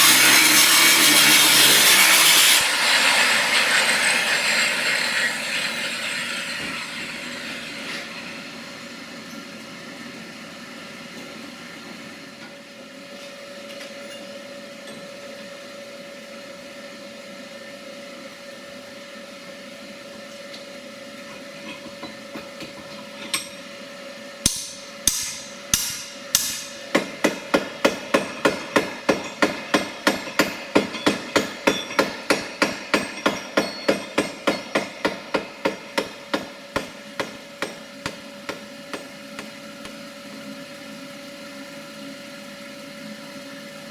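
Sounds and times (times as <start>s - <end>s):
hammer striking steel on anvil: 21.7s - 23.7s, 24.4s - 39.6s
steady hum: 24.4s - 29.2s.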